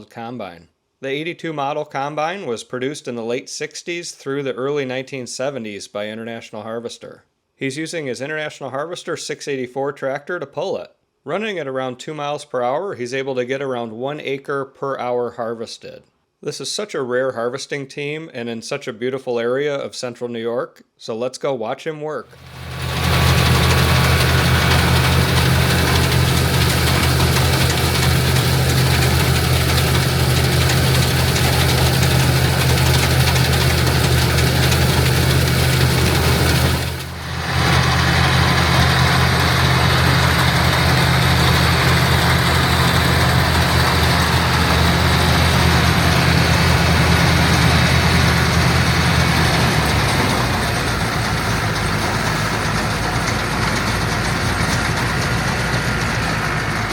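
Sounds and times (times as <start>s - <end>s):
combine threshing machinery clatter: 22.4s - 56.9s
tractor engine low hum: 22.4s - 56.9s.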